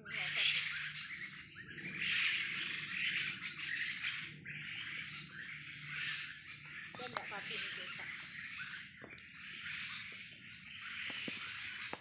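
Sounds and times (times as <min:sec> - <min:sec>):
harsh buzzing animal calls: 0:00.0 - 0:12.0.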